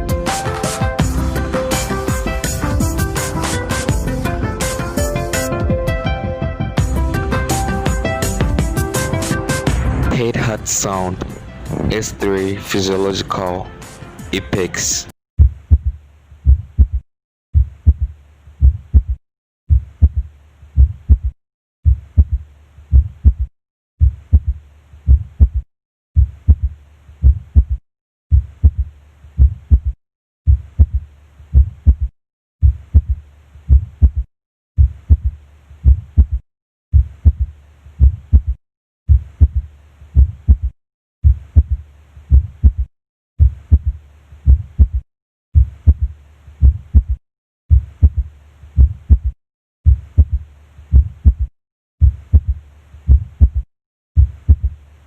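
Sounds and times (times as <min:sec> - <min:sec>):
heartbeat lub-dub: 0:01.0 - 0:05.2, 0:15.4 - 0:17.0, 0:17.6 - 0:25.6, 0:26.2 - 0:45.0, 0:45.6 - 0:54.8.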